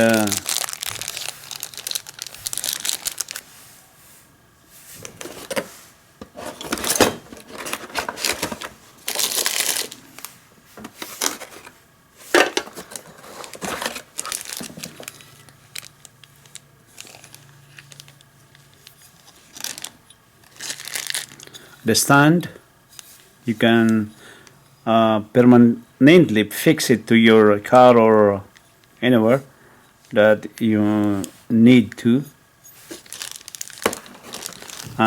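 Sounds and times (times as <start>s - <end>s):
packaging crinkling and rustling: 0.0s - 3.6s, 5.0s - 22.0s, 32.7s - 35.0s.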